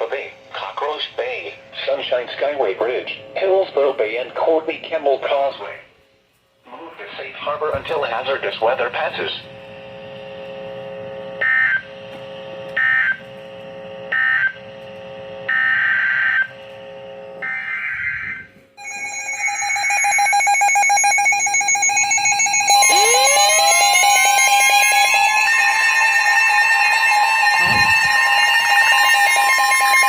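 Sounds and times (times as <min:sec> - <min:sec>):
digital data bursts: 0:18.8 - 0:30.0
rising sweeping tones: 0:18.8 - 0:30.0
steady alert tone: 0:18.8 - 0:30.0.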